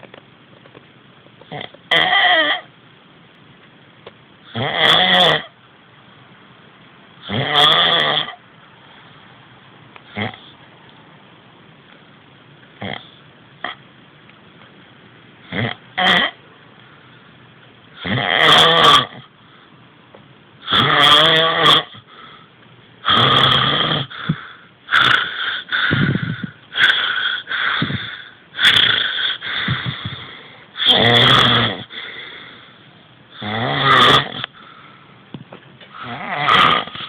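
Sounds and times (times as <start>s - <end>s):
man snoring: 4.5s - 5.5s, 7.2s - 8.4s, 18.0s - 19.2s, 20.6s - 22.0s, 23.0s - 32.1s, 33.4s - 34.6s, 36.0s - 37.0s.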